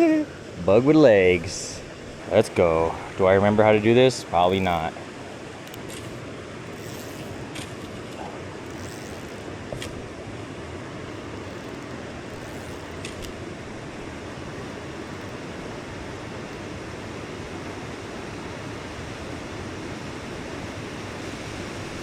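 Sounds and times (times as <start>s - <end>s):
river water rushing: 0.0s - 22.0s
faint clicks: 5.6s - 10.1s.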